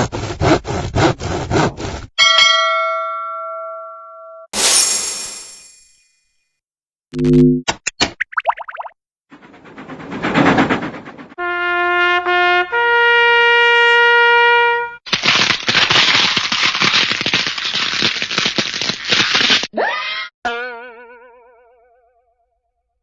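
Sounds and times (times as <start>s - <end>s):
brass-like horn notes: 11.4s - 15.0s
dense rapid crackle: 15.1s - 19.7s.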